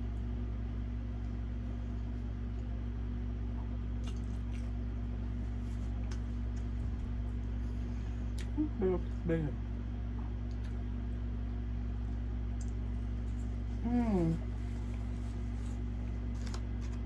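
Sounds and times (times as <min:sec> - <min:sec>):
steady low hum: 0:00.0 - 0:17.0
quiet chewing: 0:03.5 - 0:09.2, 0:10.2 - 0:11.2, 0:12.0 - 0:17.0.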